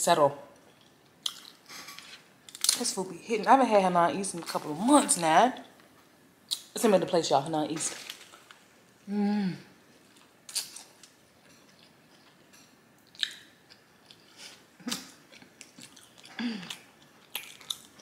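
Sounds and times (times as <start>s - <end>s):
person chewing food: 0.6s - 2.7s, 10.0s - 18.0s.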